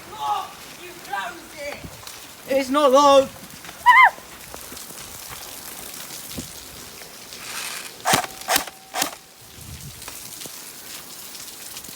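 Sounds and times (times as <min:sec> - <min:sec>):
steady rain: 0:00.0 - 0:11.9
sharp clacks: 0:07.4 - 0:09.3.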